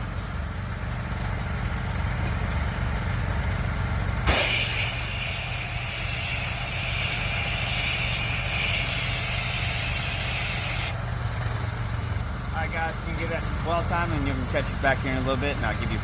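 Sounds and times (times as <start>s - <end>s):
pressure washer engine running: 4.2s - 11.0s.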